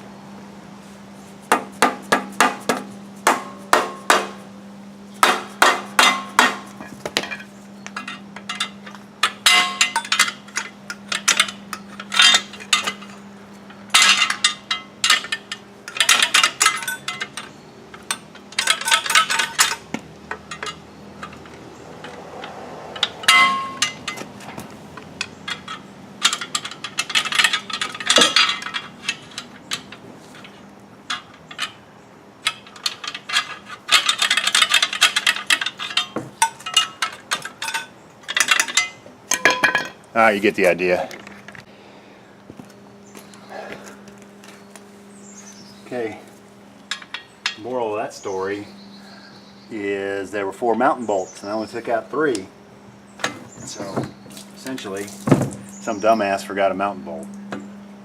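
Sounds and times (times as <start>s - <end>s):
hammer striking steel: 1.5s - 4.4s, 5.2s - 7.4s, 23.0s - 24.2s.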